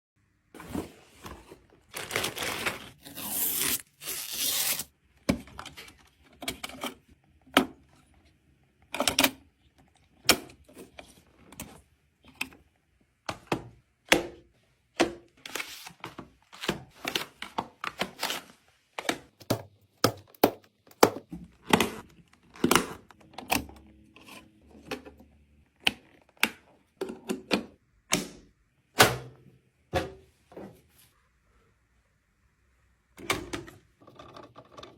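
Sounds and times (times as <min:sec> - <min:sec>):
packaging tearing and crinkling: 0:01.9 - 0:04.9.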